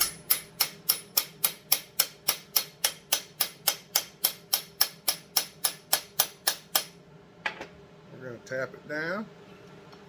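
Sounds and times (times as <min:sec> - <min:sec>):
hammer tapping on steel punch: 0:00.0 - 0:07.0.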